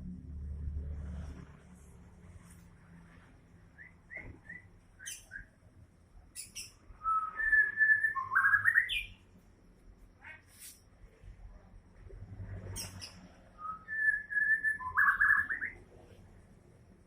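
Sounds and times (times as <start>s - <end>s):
songbird chirps and whistles: 3.7s - 5.6s, 6.3s - 9.3s, 12.8s - 15.8s.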